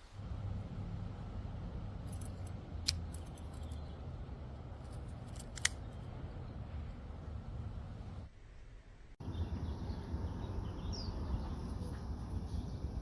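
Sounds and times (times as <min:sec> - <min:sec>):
low steady hum: 0:00.0 - 0:13.0
pocket knife metallic clicks: 0:02.1 - 0:03.9, 0:04.9 - 0:06.0
knife snapping shut: 0:05.4 - 0:05.8.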